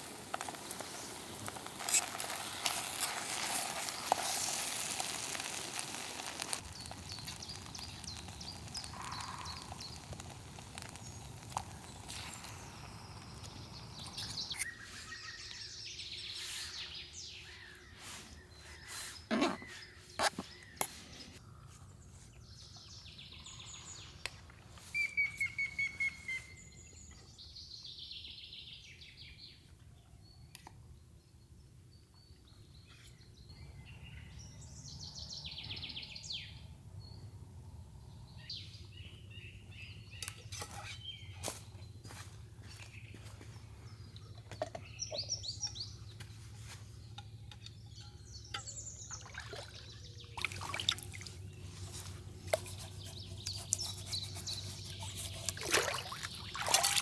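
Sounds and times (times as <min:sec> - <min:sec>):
crackling hiss: 0:00.0 - 0:14.7
birds chirping: 0:05.0 - 0:24.3, 0:32.1 - 0:57.0.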